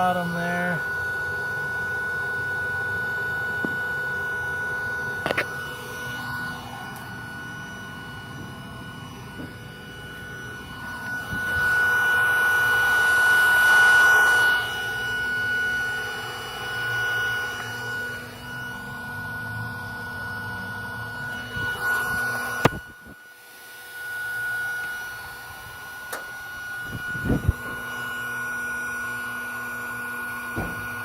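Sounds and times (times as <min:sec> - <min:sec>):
high-pitched whine: 0:00.0 - 0:31.0.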